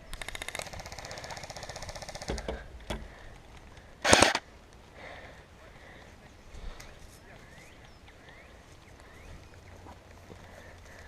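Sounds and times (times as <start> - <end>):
airsoft gun firing full-auto: 4.0 - 4.4.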